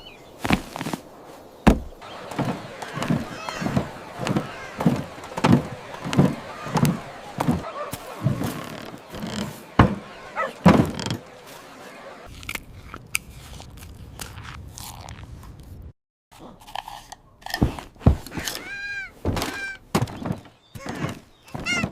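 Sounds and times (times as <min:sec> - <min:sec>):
sharp knocks: 0:01.6 - 0:11.4
evenly spaced thuds: 0:01.6 - 0:12.3, 0:17.6 - 0:21.9.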